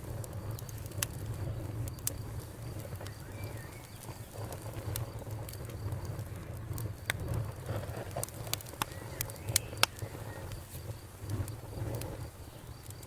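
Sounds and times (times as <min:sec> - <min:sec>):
wood fire crackling and popping: 0:00.0 - 0:13.0
bird chirp: 0:03.0 - 0:04.4.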